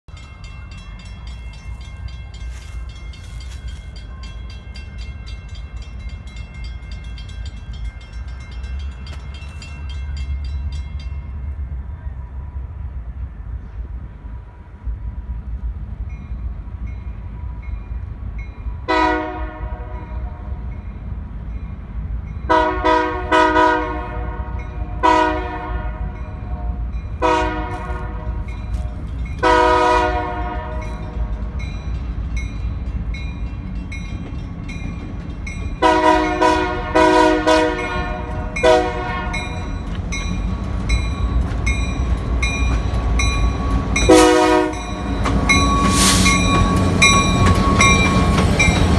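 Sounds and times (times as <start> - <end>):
locomotive engine rumbling: 0.1 - 48.9
locomotive air horn blasts: 18.9 - 20.6, 22.5 - 28.5, 29.4 - 31.1, 35.8 - 39.7, 44.1 - 45.1.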